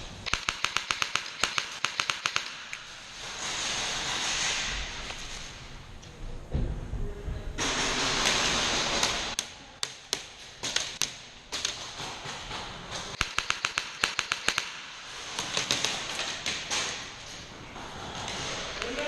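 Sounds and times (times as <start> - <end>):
airsoft gun shots: 0.3 - 2.7, 13.2 - 14.9.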